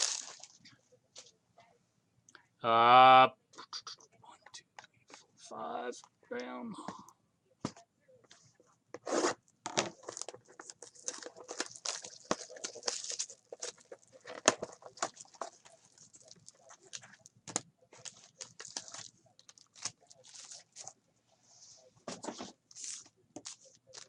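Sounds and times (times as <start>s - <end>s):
card packaging crinkling and tearing: 0.0s - 0.6s, 9.9s - 21.0s, 22.7s - 24.0s.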